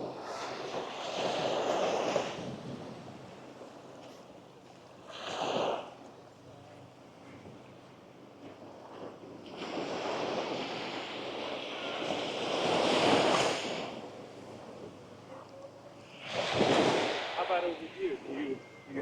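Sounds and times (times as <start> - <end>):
sea waves washing up sand: 0.0 - 4.3, 8.4 - 15.2, 16.0 - 19.0.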